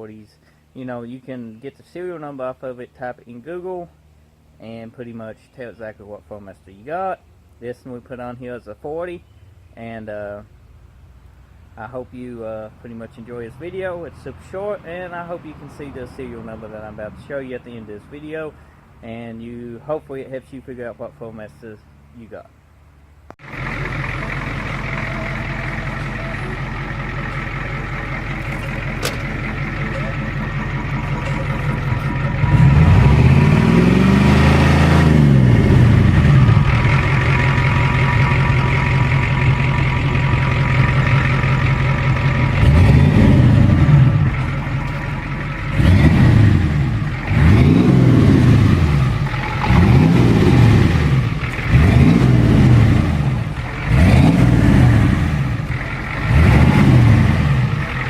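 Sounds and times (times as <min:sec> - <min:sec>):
diesel engine idling and revving: 0:10.4 - 0:21.2, 0:22.7 - 0:58.0.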